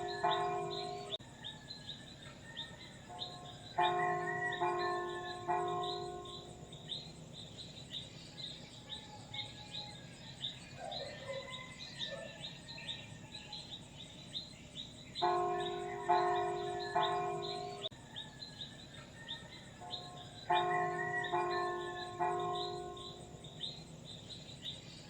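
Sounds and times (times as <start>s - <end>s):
church bell ringing: 0.0s - 1.2s, 3.1s - 7.0s, 15.2s - 18.0s, 19.8s - 23.8s
birds calling: 0.0s - 1.6s, 2.2s - 17.9s, 19.2s - 25.0s.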